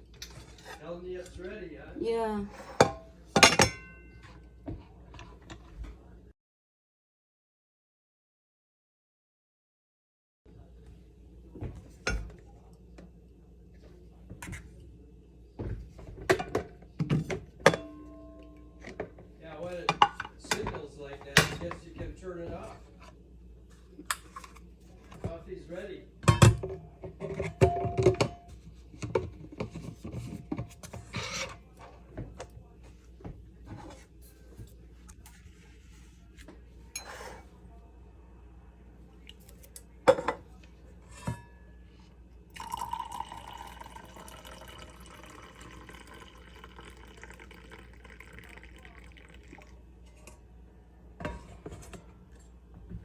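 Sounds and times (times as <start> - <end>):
kitchenware knocks and clinks: 2.7 - 5.6, 16.0 - 19.2, 19.9 - 21.8, 26.2 - 31.5, 40.1 - 40.5
low steady hum: 10.5 - 53.0
kitchen items clicking and knocking: 26.3 - 31.5.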